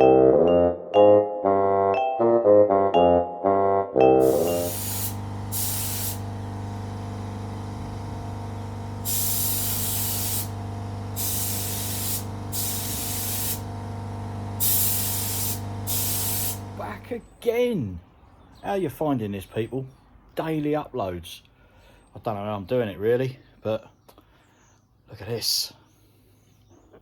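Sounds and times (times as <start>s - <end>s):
piano music: 0.0s - 5.1s
machine hum: 4.2s - 17.0s
paint spraying in bursts: 4.2s - 17.0s.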